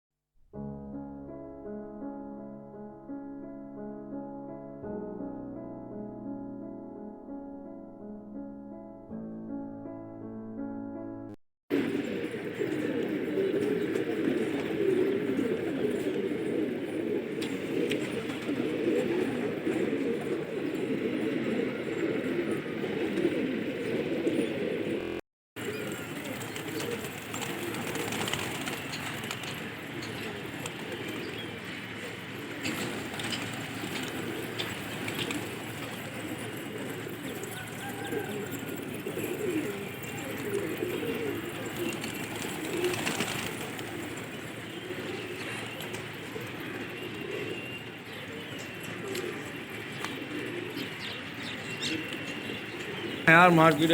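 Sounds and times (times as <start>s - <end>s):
pigeons cooing: 11.7s - 53.9s.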